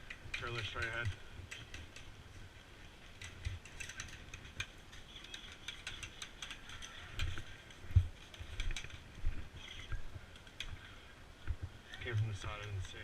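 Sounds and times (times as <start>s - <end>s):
gear clicks and rattles: 0.0s - 2.1s, 3.0s - 10.8s.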